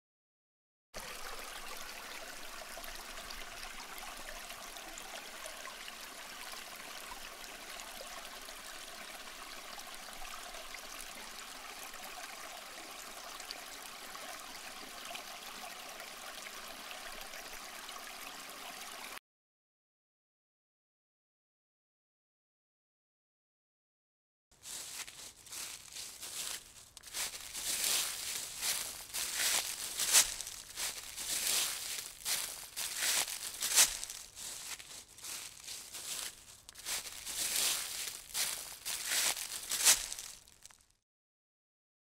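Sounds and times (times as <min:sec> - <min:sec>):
stream babbling: 0:01.0 - 0:19.2, 0:24.6 - 0:40.6.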